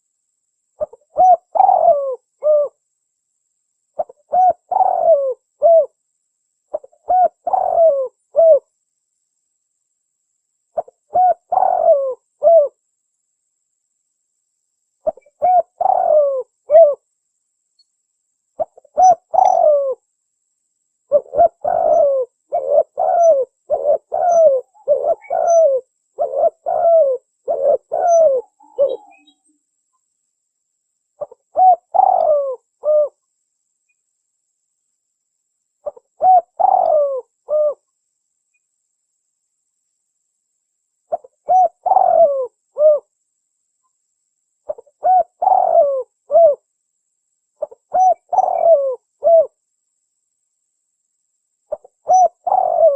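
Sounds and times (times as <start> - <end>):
dove cooing: 0.8 - 2.8, 4.0 - 6.0, 6.7 - 8.7, 10.8 - 12.8, 15.0 - 17.0, 18.6 - 20.0, 21.1 - 29.4, 31.2 - 33.2, 35.8 - 37.8, 41.1 - 43.1, 44.7 - 46.6, 47.6 - 49.6, 51.7 - 52.9.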